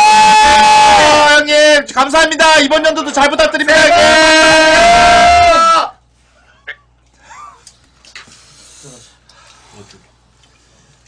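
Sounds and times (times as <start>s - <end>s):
man shouting: 0.0s - 6.0s.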